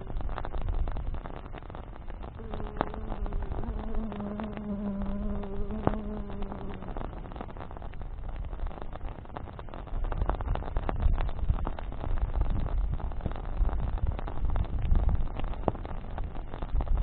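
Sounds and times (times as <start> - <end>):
campfire crackling and popping: 0.0 - 17.0
flying insect buzzing: 2.4 - 7.7.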